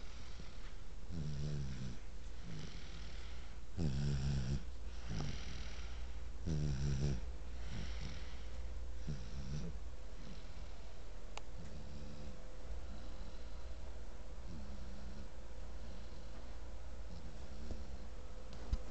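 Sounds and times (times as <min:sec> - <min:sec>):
soft breaths: 0:00.0 - 0:03.8, 0:04.5 - 0:06.4, 0:07.1 - 0:18.9
person snoring: 0:00.0 - 0:10.7.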